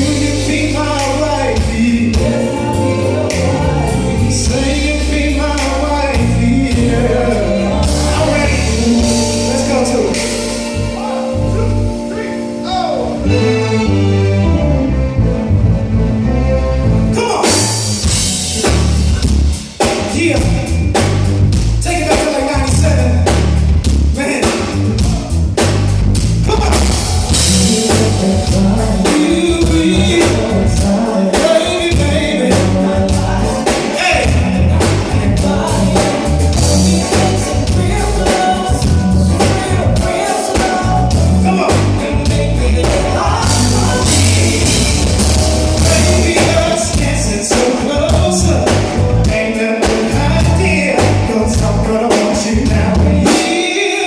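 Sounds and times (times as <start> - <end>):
person singing: 0.0 - 14.6, 26.5 - 54.0
live band playing: 0.0 - 54.0.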